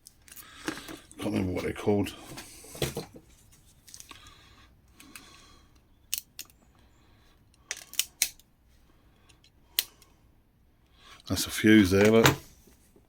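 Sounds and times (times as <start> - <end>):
electronic parts clicking: 5.0 - 6.6, 7.4 - 8.5.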